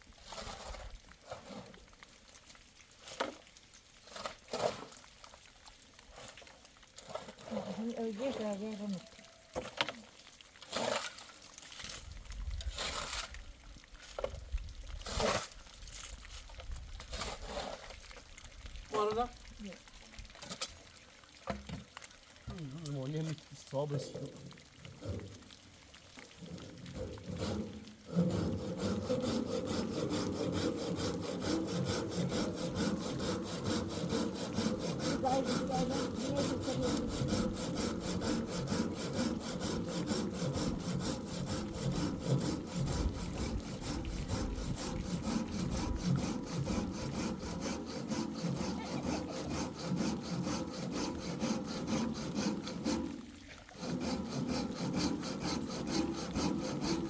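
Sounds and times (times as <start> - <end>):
hand saw rasping through wood: 10.7 - 11.2, 12.7 - 13.4, 15.0 - 15.6, 17.1 - 17.9, 26.5 - 53.2, 53.8 - 57.0.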